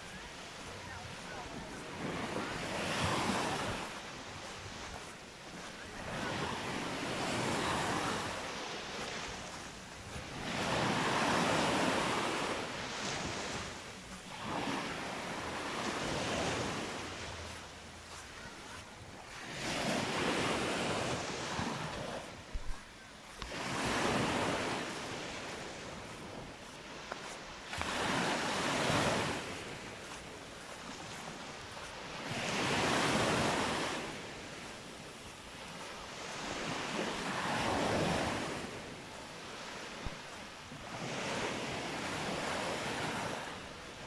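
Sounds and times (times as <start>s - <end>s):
surf breaking on beach: 27.6s - 39.1s.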